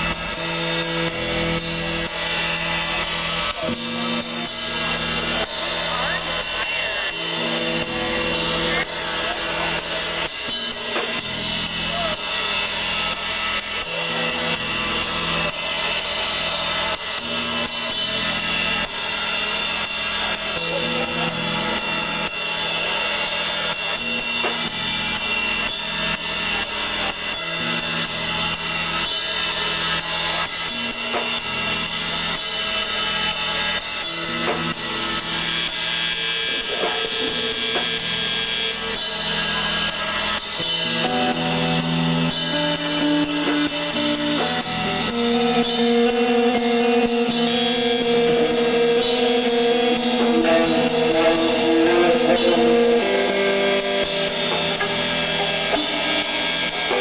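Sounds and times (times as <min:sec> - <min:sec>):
long held guitar notes: 0:00.0 - 0:19.7, 0:36.6 - 0:57.0
cymbal hits: 0:00.0 - 0:57.0
rock band playing: 0:00.0 - 0:57.0.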